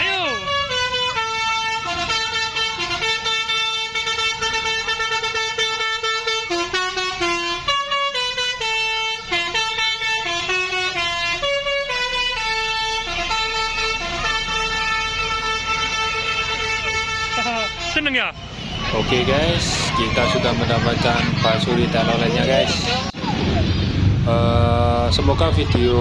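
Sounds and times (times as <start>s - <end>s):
musical air horn playing a tune: 0.1s - 18.0s.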